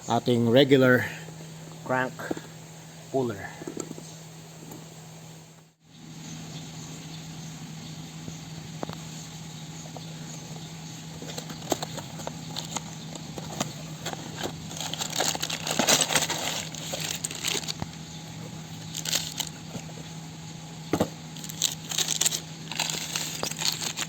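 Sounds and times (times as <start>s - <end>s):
packaging crinkling and rustling: 11.2s - 18.0s, 18.8s - 19.9s, 21.4s - 24.0s.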